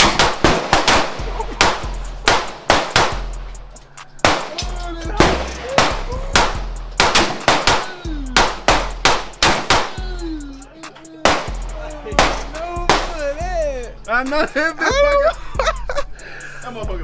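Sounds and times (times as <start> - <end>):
gunshots with ringing tail: 0.0 - 3.4, 4.2 - 10.0, 11.2 - 13.2.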